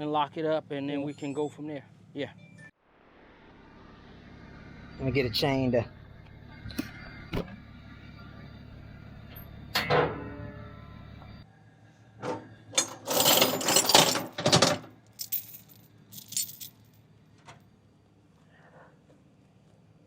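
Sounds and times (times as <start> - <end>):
low engine hum: 3.0 - 12.0
steel chain links rattling: 12.8 - 17.0.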